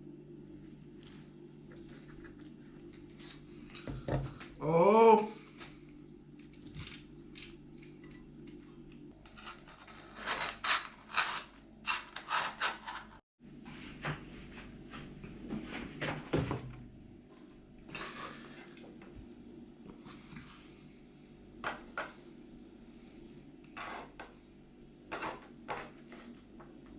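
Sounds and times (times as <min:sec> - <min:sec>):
utensils scraping containers: 0:09.2 - 0:13.2.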